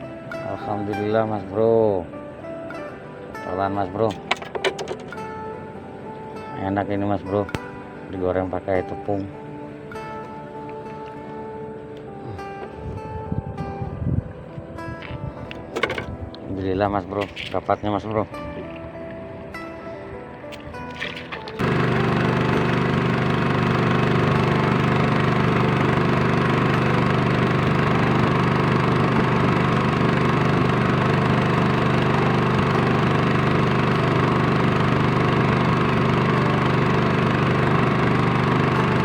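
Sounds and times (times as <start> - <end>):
small boat engine running: 21.0 - 39.0.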